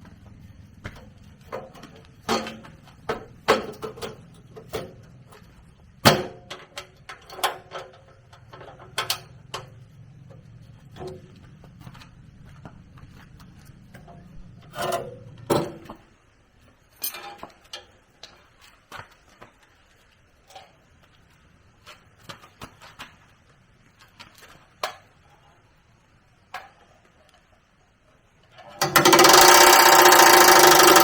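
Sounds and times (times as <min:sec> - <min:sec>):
machine motor humming: 0:28.8 - 0:31.0.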